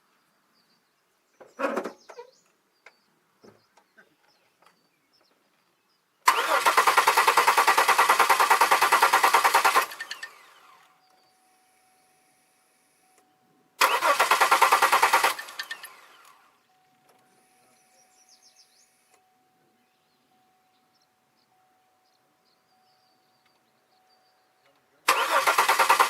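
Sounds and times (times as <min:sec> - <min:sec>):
car engine cranking: 0:06.3 - 0:10.9, 0:13.8 - 0:16.5, 0:25.1 - 0:26.0.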